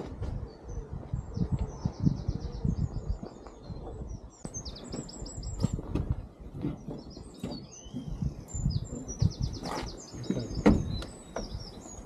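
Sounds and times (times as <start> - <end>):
songbirds singing: 0.3 - 12.0
knocks and clunks: 4.8 - 11.8.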